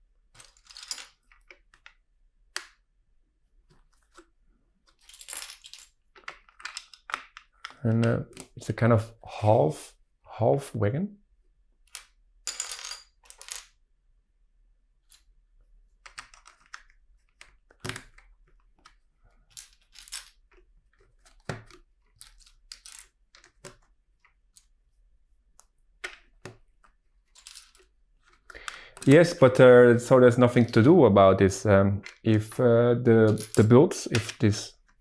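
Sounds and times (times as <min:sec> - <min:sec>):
plastic pieces clicking: 0:03.9 - 0:08.6, 0:16.0 - 0:24.8, 0:25.6 - 0:29.4, 0:33.3 - 0:35.0.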